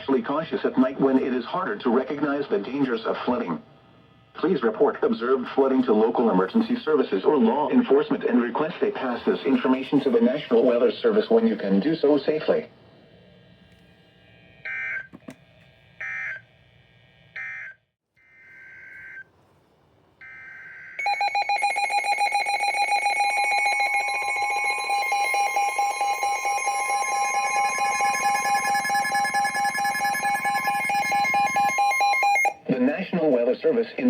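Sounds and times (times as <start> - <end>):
two-tone attention signal: 20.2 - 32.6
buzzy data bursts: 23.1 - 32.2.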